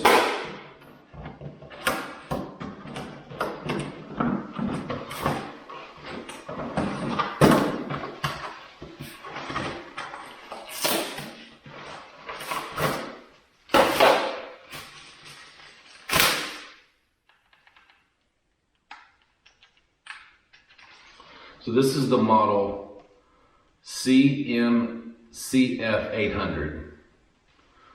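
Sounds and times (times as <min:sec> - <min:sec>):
knocks clunks and rustles of unpacking: 0:00.0 - 0:18.0.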